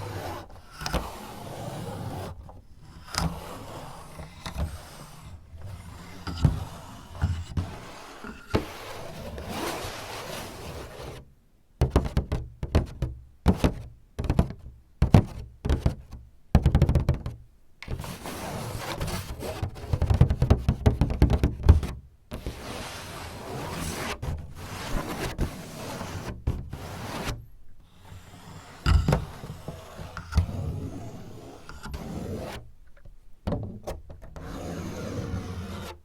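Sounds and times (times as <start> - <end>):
fingers tapping on paper door: 11.8 - 17.4, 19.9 - 22.0.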